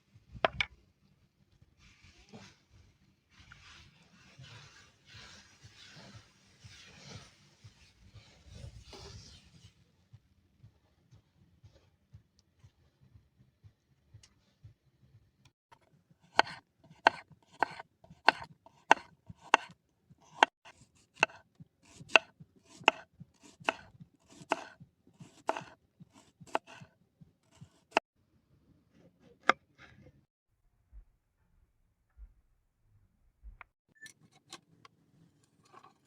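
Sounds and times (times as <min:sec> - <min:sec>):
knife chopping on cutting board: 0:16.3 - 0:26.9.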